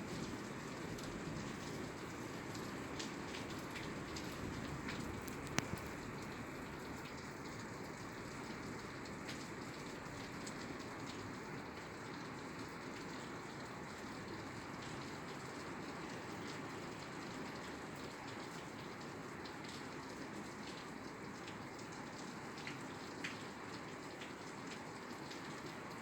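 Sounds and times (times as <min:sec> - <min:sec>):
rain falling on a roof: 0:00.0 - 0:26.0.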